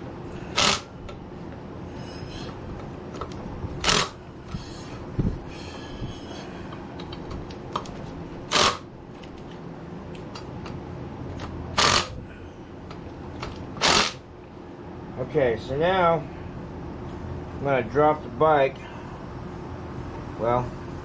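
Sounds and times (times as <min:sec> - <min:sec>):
steady low hum: 0:00.0 - 0:21.0
harsh tool bursts: 0:00.4 - 0:01.0, 0:03.8 - 0:04.2, 0:08.5 - 0:08.9, 0:11.8 - 0:12.2, 0:13.8 - 0:14.2.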